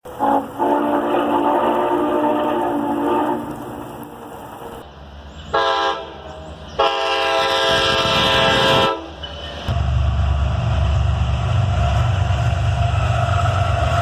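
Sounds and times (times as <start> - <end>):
train rumbling: 0.0 - 14.0
locomotive air horn blasts: 0.1 - 4.3, 5.5 - 9.2.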